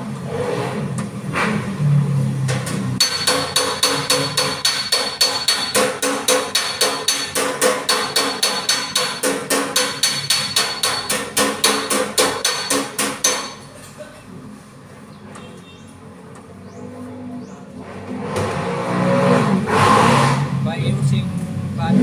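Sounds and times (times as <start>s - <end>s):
hammer striking steel panel: 3.0s - 13.7s.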